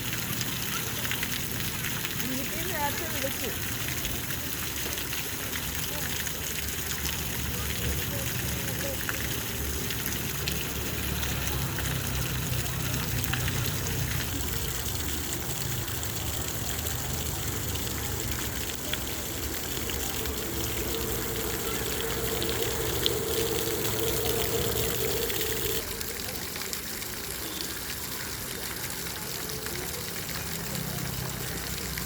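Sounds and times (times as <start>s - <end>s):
fountain water splashing: 0.0s - 32.0s
low steady hum: 12.9s - 25.9s
high steady tone: 18.2s - 25.8s.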